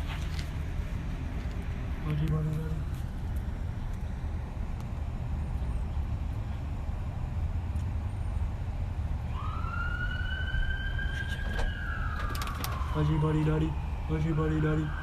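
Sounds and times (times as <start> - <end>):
siren wailing: 9.2 - 15.0.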